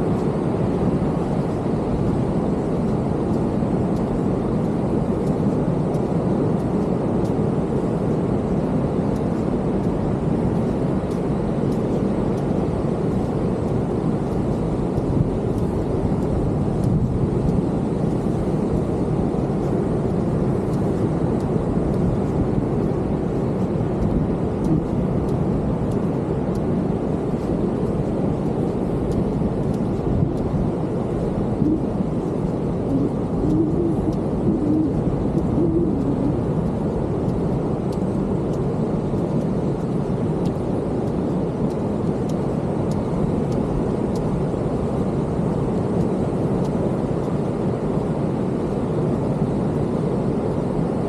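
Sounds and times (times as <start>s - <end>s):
heavy ocean surf breaking: 8.0s - 40.6s.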